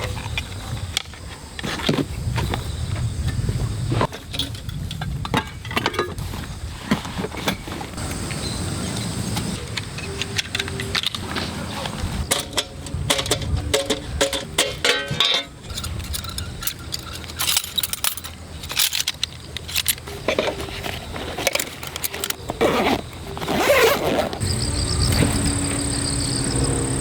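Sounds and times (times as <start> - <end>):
small metal objects clinking: 12.2 - 20.8.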